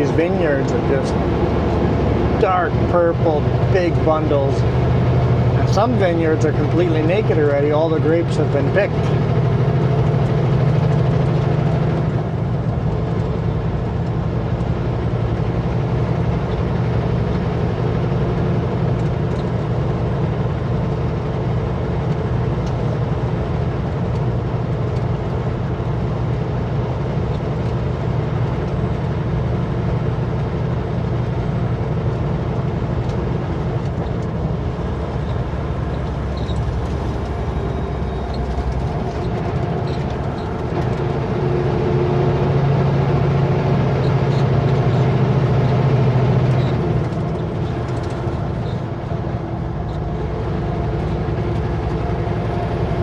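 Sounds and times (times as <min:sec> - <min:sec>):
road noise: 0:00.0 - 0:53.0
truck diesel engine driving: 0:00.0 - 0:53.0.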